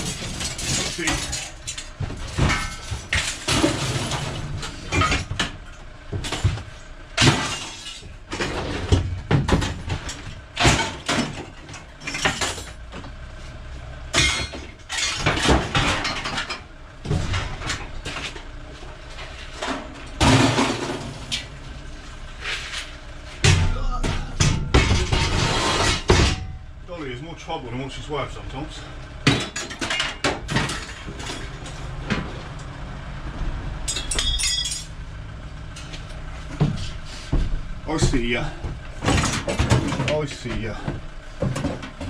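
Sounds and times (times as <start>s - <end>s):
scrap steel crashing onto pile: 0.0s - 5.6s, 6.2s - 12.9s, 14.1s - 21.7s, 23.3s - 26.7s, 29.2s - 32.4s.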